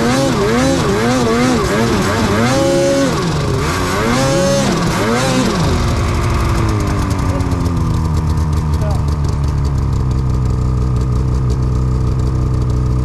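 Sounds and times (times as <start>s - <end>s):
snowmobile engine revving: 0.0s - 9.6s.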